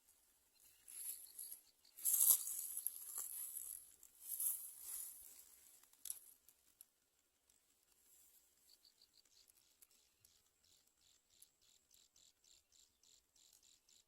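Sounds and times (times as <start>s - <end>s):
dry rustling in nest: 0.8s - 6.4s.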